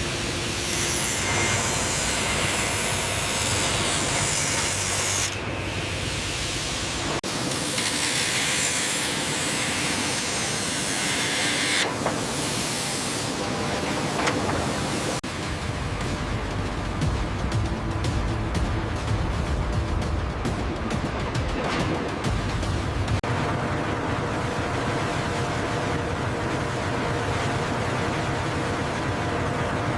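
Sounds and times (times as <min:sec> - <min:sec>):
loud machinery hissing: 0:00.0 - 0:14.1.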